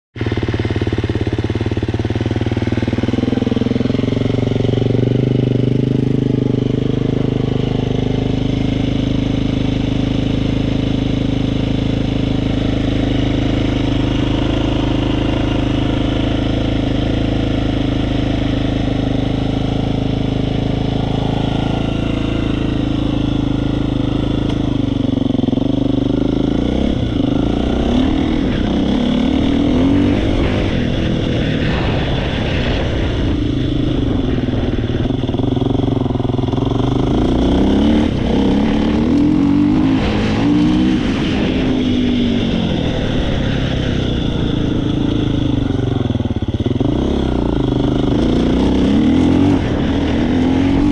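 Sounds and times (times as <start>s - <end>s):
engine running with rattle: 0.2s - 50.9s.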